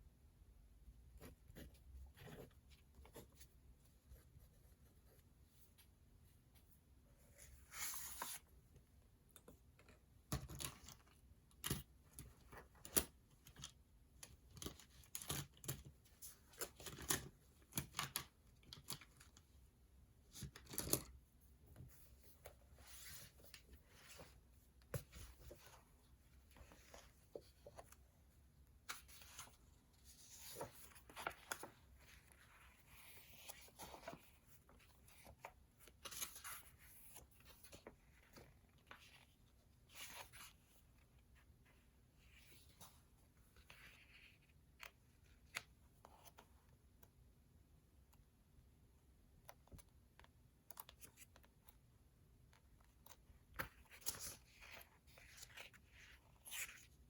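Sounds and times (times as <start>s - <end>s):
paper rustling: 28.8s - 40.8s.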